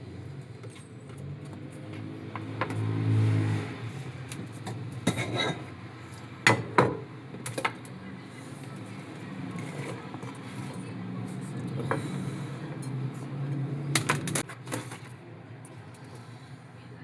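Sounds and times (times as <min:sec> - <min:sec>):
cookware clinks and knocks: 0:05.0 - 0:05.7.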